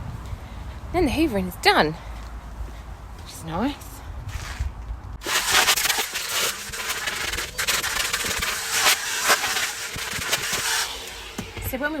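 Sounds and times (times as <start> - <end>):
vacuum cleaner running: 7.9 - 12.0.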